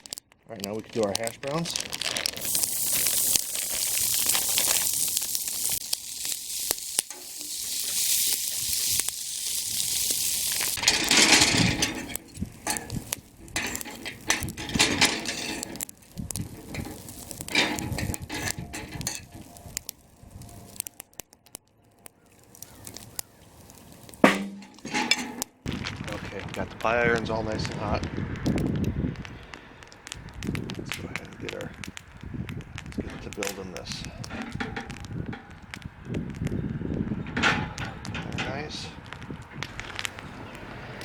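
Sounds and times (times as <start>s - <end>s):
hash browns sizzling in a pan: 1.1s - 21.3s, 22.2s - 29.5s.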